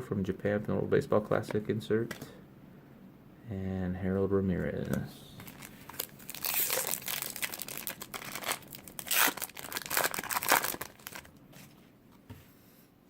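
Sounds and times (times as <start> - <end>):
plastic wrapper tearing and crinkling: 5.4 - 11.7.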